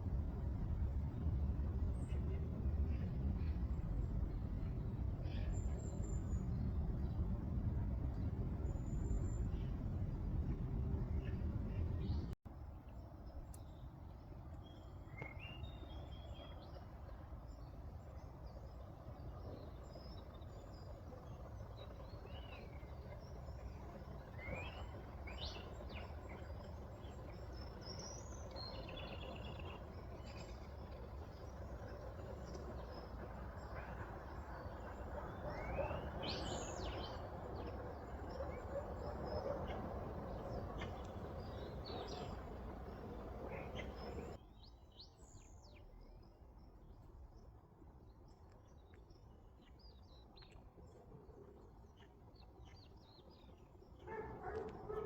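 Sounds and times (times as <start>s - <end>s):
outdoor background noise: 0.0s - 55.0s
small birds chirping: 17.5s - 45.9s.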